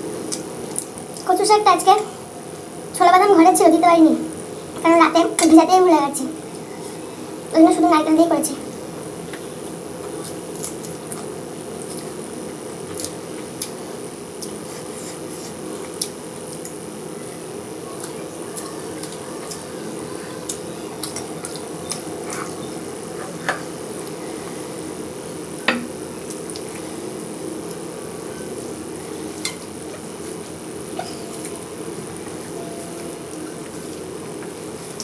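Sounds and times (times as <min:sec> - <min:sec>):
steady low hum: 0:00.0 - 0:35.0
wet squishing and chewing: 0:14.4 - 0:16.8, 0:20.4 - 0:22.6, 0:26.2 - 0:27.8.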